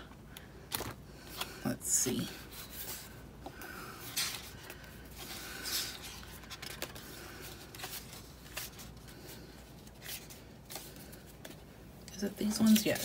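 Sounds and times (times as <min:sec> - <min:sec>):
paper rustling: 0:04.0 - 0:11.6, 0:12.4 - 0:13.0.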